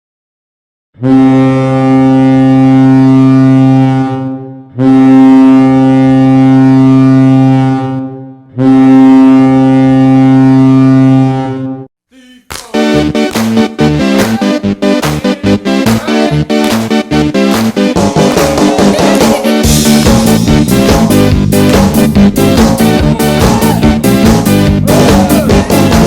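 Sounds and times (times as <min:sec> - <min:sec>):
goal horn blasts: 0:01.0 - 0:11.9.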